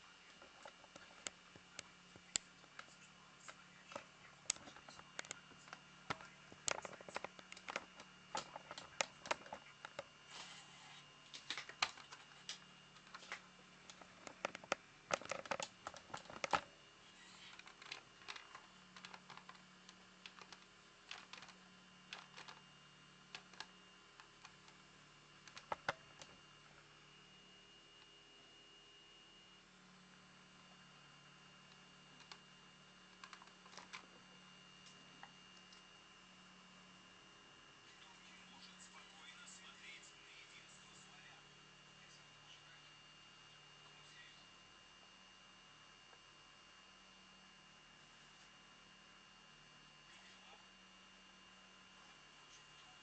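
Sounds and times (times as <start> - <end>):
faint steady hum: 0.0 - 53.0.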